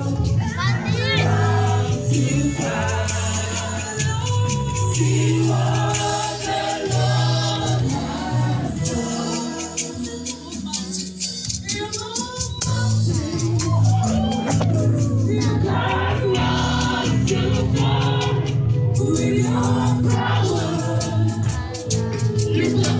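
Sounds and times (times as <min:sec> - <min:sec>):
bass and percussion: 0:00.0 - 0:22.9
gospel choir singing: 0:00.0 - 0:22.9.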